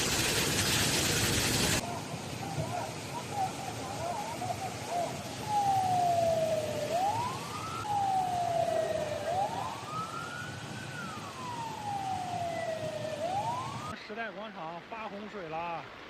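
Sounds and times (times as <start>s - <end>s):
steady background noise: 0.0s - 16.0s
siren wailing: 2.4s - 14.0s.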